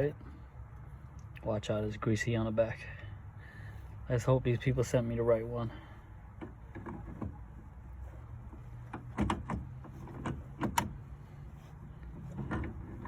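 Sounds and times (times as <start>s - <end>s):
low steady hum: 0.0s - 13.0s
metal parts clicking and clunking: 8.5s - 11.2s, 12.0s - 13.0s.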